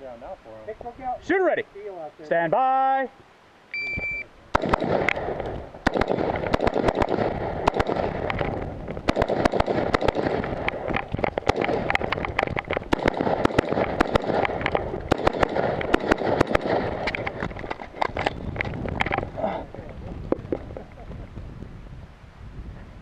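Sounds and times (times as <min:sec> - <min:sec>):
rifle shots: 0:04.5 - 0:17.5.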